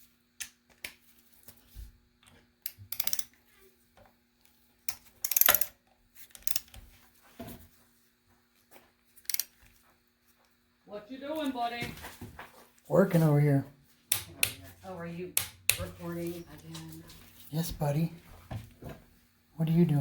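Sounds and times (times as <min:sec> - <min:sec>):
wrench and metal parts clicking: 0:02.7 - 0:03.4, 0:04.9 - 0:06.8, 0:09.2 - 0:09.6.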